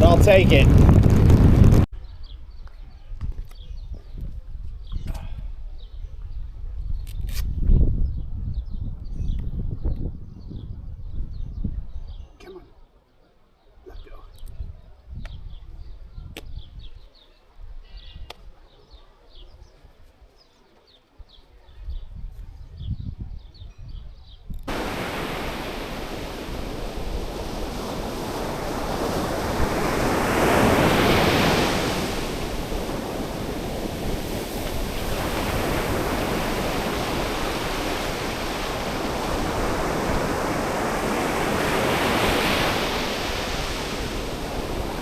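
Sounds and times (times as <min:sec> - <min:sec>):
ocean waves breaking: 0:00.0 - 0:01.8, 0:24.7 - 0:45.0.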